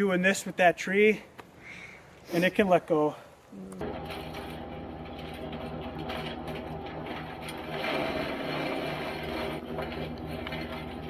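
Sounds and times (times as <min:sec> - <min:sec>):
machine running with low pulsing: 0:03.8 - 0:11.0.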